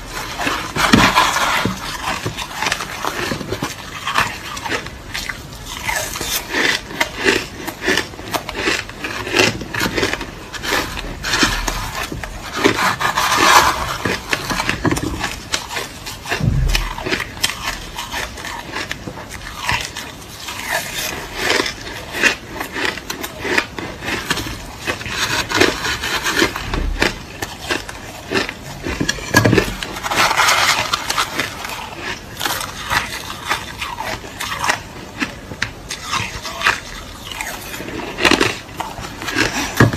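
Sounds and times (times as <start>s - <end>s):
chewing crushed ice: 0.0s - 39.9s
dull low thuds: 16.4s - 17.2s.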